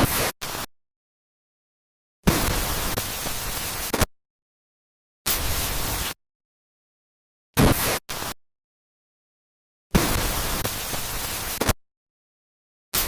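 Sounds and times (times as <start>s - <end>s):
harsh static noise bursts: 0.0s - 0.7s, 2.3s - 4.1s, 5.3s - 6.2s, 7.6s - 8.4s, 9.9s - 11.8s.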